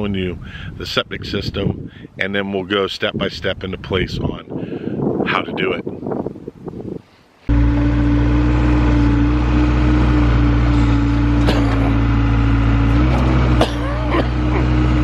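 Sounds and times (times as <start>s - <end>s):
digger diesel engine running: 7.5s - 15.0s.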